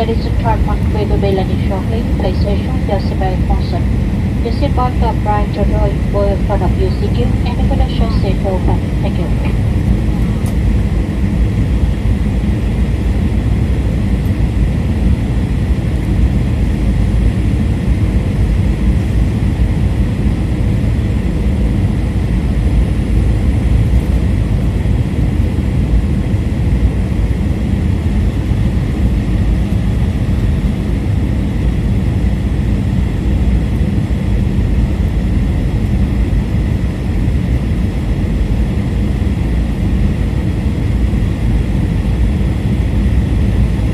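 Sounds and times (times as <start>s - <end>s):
faint high whine: 0.0s - 11.8s
airplane cabin rumble: 0.0s - 43.9s.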